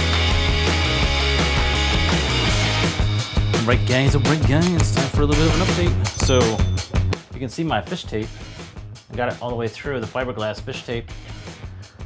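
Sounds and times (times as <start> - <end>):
heavy rock music: 0.0 - 7.4.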